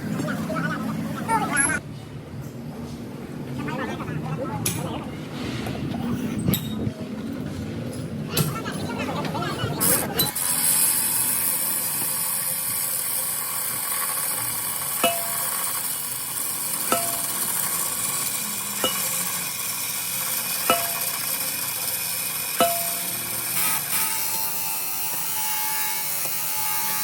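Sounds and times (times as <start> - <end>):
sharp metallic clinks: 14.4 - 23.6.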